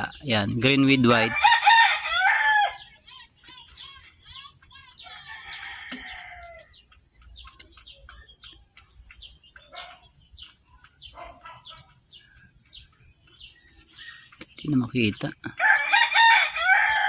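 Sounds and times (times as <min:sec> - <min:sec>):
chickens clucking and chirping: 0:00.0 - 0:17.0
rooster crowing: 0:01.0 - 0:02.9, 0:05.0 - 0:06.8, 0:15.6 - 0:17.0.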